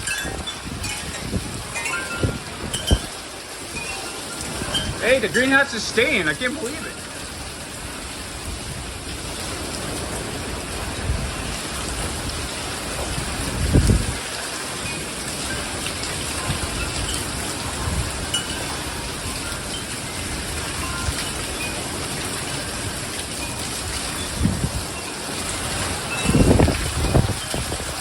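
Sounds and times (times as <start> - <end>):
heavy rain: 0.0 - 28.0
strong wind gusts: 0.0 - 28.0.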